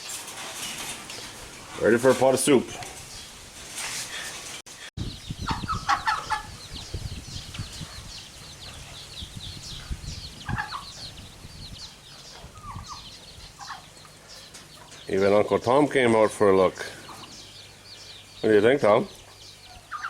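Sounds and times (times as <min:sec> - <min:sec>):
chickens clucking: 0:04.0 - 0:20.0.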